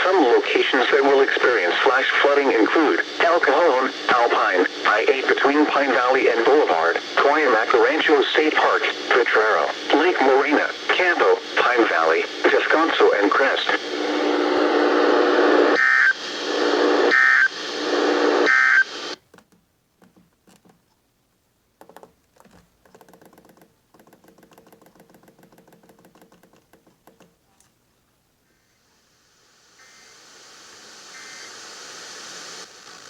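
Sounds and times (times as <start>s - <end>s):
radio static: 0.0s - 19.2s, 29.5s - 33.0s
faint clicks: 21.8s - 27.8s.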